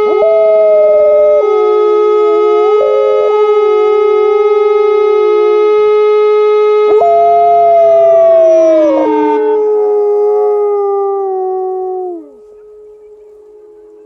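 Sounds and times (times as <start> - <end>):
air raid siren: 0.0 - 14.0
dog howling: 0.2 - 1.5, 6.9 - 12.4.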